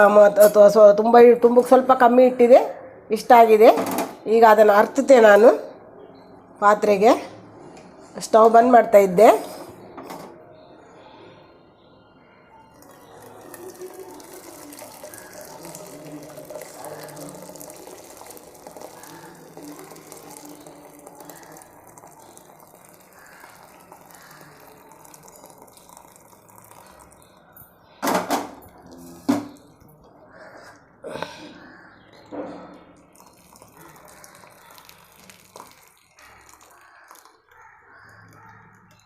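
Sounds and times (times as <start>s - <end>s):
liquid pouring through a strainer: 12.8s - 27.5s, 32.8s - 39.0s.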